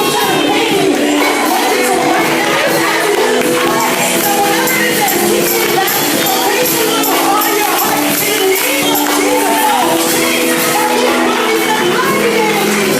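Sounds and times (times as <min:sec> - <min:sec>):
people singing: 0:00.0 - 0:12.9
worship band music: 0:00.0 - 0:12.9
tambourine jingling: 0:03.5 - 0:10.6.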